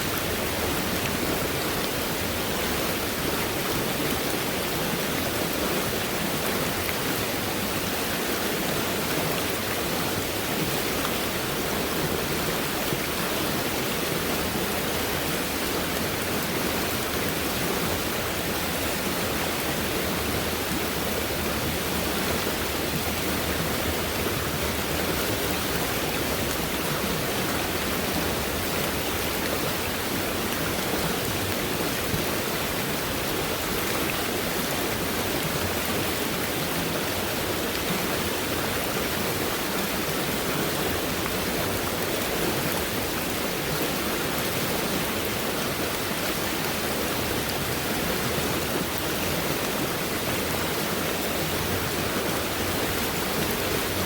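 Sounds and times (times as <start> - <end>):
stream water rushing: 0.0 - 54.0.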